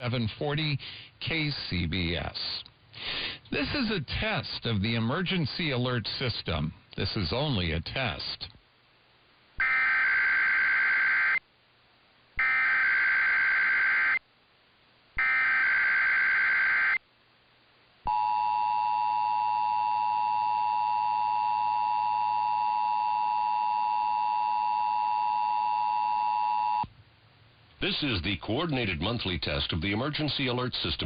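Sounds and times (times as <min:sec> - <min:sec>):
warbling data tones: 0:09.6 - 0:11.4, 0:12.4 - 0:14.2, 0:15.2 - 0:17.0.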